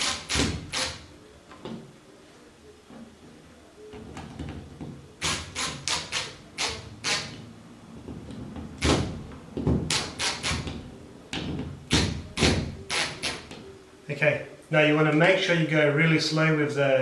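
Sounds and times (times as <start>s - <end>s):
cordless drill driving screws: 0.0s - 1.1s, 5.2s - 7.4s, 9.9s - 10.7s, 12.9s - 13.4s.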